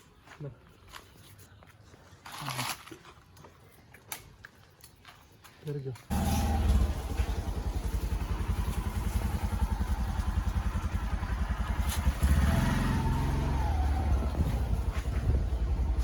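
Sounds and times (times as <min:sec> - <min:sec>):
motorcycle engine revving: 0:06.1 - 0:16.0.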